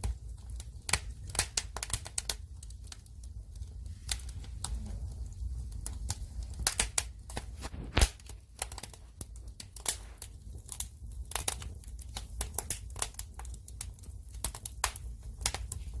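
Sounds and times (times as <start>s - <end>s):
wood fire crackling and popping: 0.0s - 16.0s
low steady rumble: 2.3s - 12.5s.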